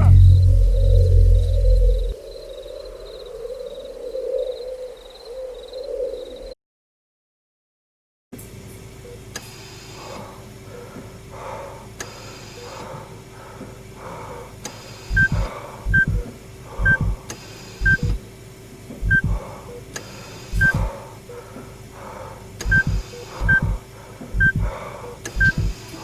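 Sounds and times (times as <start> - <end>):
low double thump: 0.0 - 2.2, 15.1 - 16.2, 16.8 - 17.2
electronic hum with warbling: 0.0 - 3.0, 15.1 - 17.2, 17.8 - 18.3, 19.0 - 19.6, 20.5 - 20.9, 22.6 - 26.0
short high electronic beeps: 15.1 - 16.1, 17.8 - 18.2, 19.0 - 19.3, 20.6 - 20.8, 22.7 - 23.6, 24.4 - 24.6, 25.4 - 25.7.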